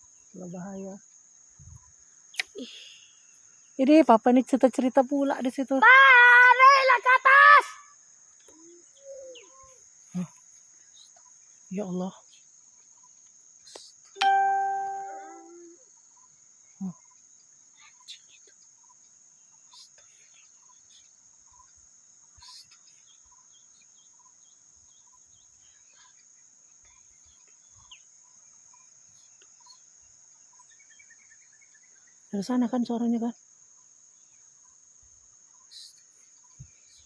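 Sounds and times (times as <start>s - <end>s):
high-pitched insect drone: 13.8s - 17.2s
two-note ringing tone: 14.2s - 15.8s.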